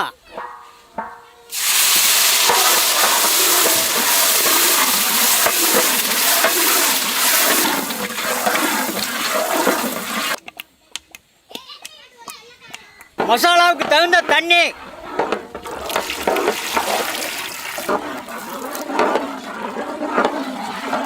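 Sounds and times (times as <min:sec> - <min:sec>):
paste sizzling in hot butter: 0:01.5 - 0:10.4, 0:14.0 - 0:21.0.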